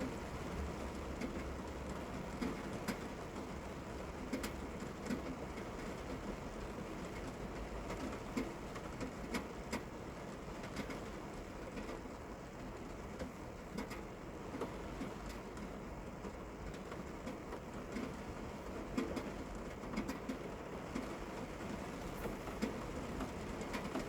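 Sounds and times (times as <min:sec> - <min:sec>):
steady rain: 0:00.0 - 0:24.0.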